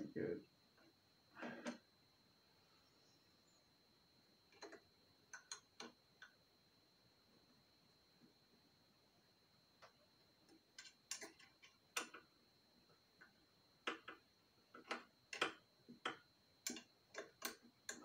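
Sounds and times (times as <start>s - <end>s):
hand tools clicking on metal parts: 10.8s - 12.2s.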